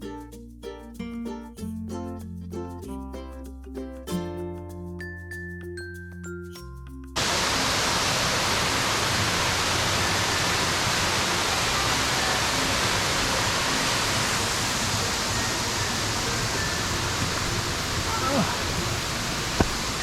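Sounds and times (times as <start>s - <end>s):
waterfall rushing: 7.2s - 20.0s.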